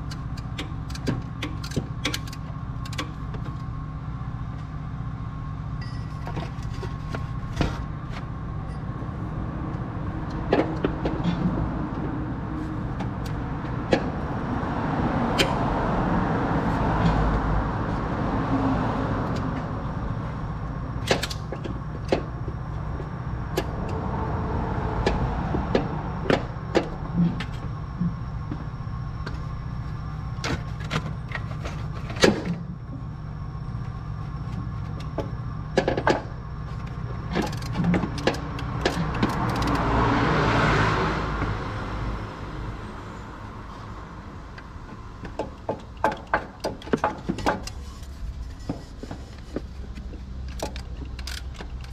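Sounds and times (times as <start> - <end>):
clicks and knocks of car work: 0.0 - 3.7, 10.2 - 12.2, 21.0 - 24.0, 30.4 - 32.8, 34.4 - 40.1, 44.5 - 51.9
steady low rumble: 2.5 - 39.7.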